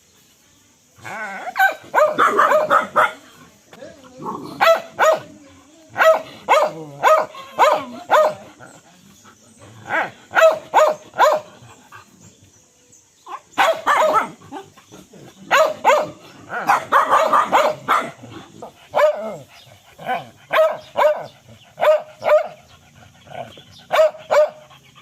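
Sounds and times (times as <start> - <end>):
dog barking: 1.6 - 3.2, 4.3 - 5.4, 6.0 - 8.6, 9.9 - 11.5, 13.3 - 14.7, 15.5 - 22.6, 23.8 - 24.8.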